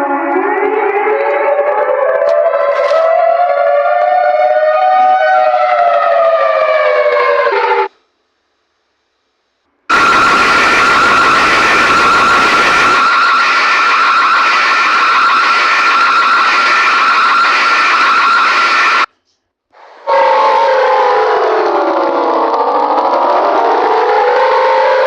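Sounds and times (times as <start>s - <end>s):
siren sliding down in pitch: 0.0s - 7.9s, 9.9s - 19.1s
siren steady high tone: 0.0s - 8.0s, 9.9s - 19.1s, 20.1s - 25.0s.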